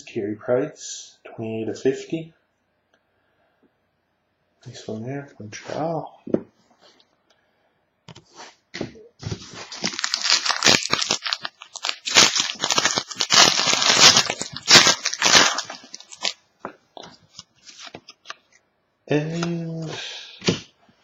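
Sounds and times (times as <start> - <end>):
wrapper tearing and crinkling: 9.2 - 16.4, 17.3 - 18.4.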